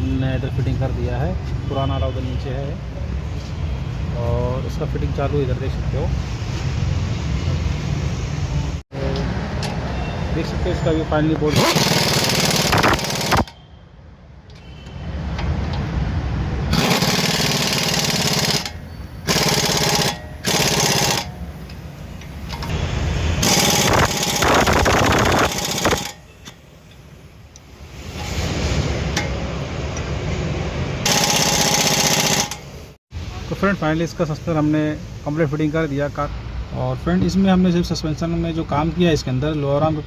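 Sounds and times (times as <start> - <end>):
impact wrench rattling: 11.5 - 13.6, 16.7 - 22.8, 23.4 - 27.0, 31.0 - 32.9.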